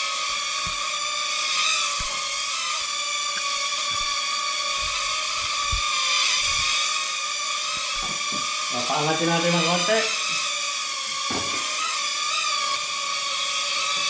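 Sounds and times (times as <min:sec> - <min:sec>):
toy drone propellers whining: 0:00.0 - 0:14.0
soft low thumps: 0:03.6 - 0:06.8.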